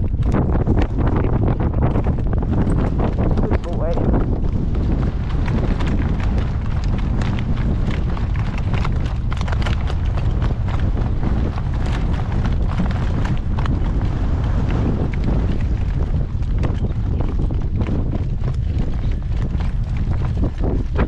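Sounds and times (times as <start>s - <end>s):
horse hooves clip-clopping: 0.0s - 21.0s
wind buffeting microphone: 0.0s - 21.0s.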